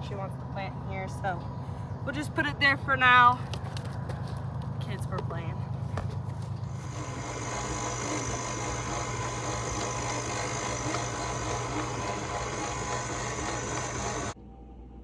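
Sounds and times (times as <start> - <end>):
small motor humming: 6.6 - 14.4.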